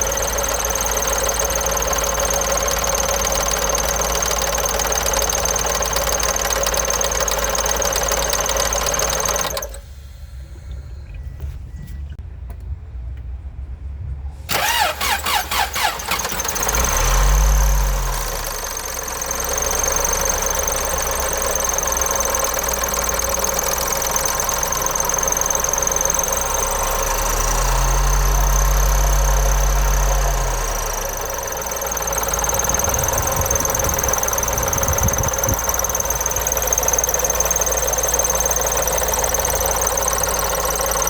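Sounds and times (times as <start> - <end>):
starter cranking engine: 0.0 - 10.0, 14.5 - 41.0
car engine running and revving: 16.4 - 41.0.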